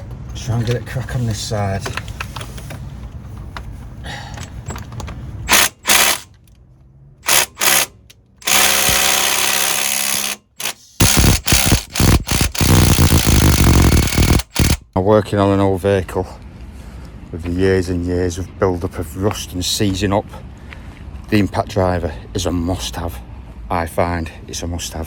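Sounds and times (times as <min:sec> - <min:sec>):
impact driver hammering: 0:05.5 - 0:06.3, 0:07.2 - 0:14.8.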